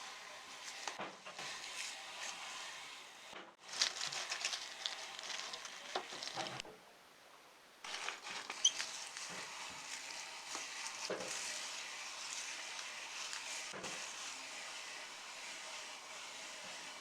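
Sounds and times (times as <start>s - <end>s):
meat grinder crunching crackers: 3.6s - 6.6s, 7.9s - 17.0s.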